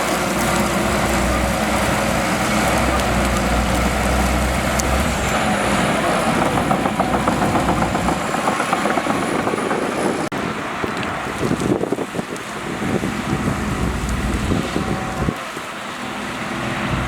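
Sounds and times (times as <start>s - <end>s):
bulldozer diesel engine under load: 0.0s - 17.0s
clattering and cracking: 2.4s - 11.1s.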